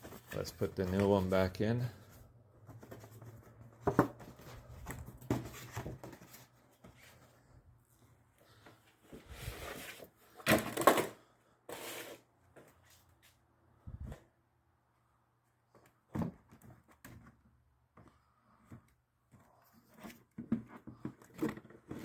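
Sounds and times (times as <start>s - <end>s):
rustling and scraping of filter: 0.0s - 13.1s.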